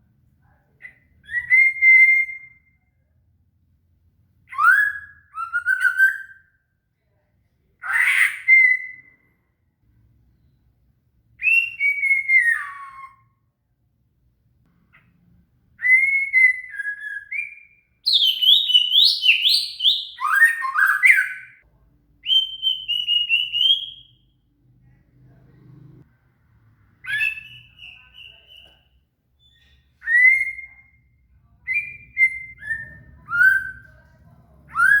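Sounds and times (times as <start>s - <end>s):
bird singing whistled phrases: 0.8s - 2.8s, 4.5s - 6.5s, 11.4s - 13.3s, 15.8s - 21.6s, 22.2s - 24.2s, 27.0s - 31.1s, 31.7s - 33.9s.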